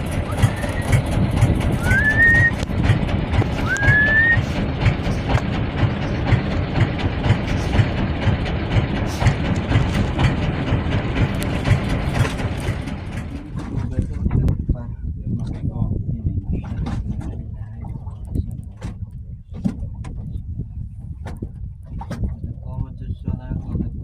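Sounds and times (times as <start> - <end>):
rattling and knocking: 0.0 - 15.8, 16.5 - 22.5
vehicle engine rumbling: 0.0 - 24.0
rising whistle-like chirp: 1.8 - 2.6, 3.6 - 4.4.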